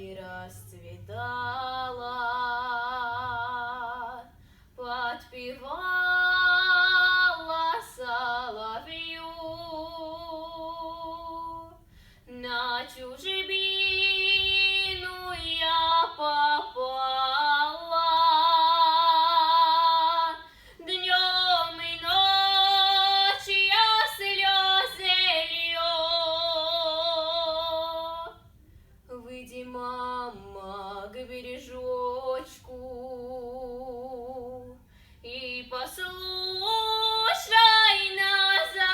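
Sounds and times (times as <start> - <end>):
girl singing a cappella: 0.0 - 28.5, 29.1 - 38.9
singer breathing: 4.3 - 4.8, 11.8 - 12.3, 20.4 - 20.8, 34.8 - 35.2.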